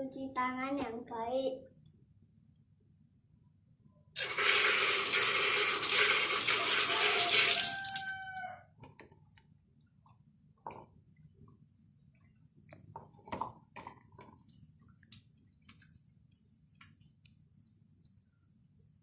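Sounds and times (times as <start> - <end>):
water running from a tap: 4.2 - 8.2
water dripping: 14.1 - 18.9.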